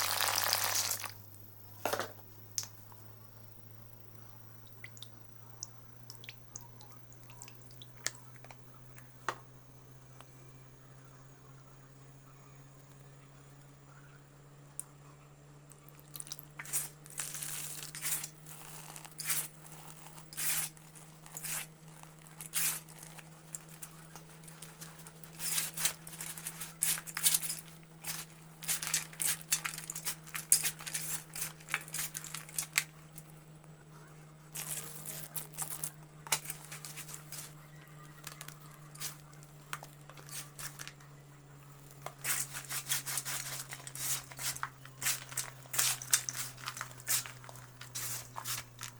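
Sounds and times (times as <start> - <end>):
steady low hum: 0.0 - 48.9
dried mud crunching and crackling: 15.7 - 48.9.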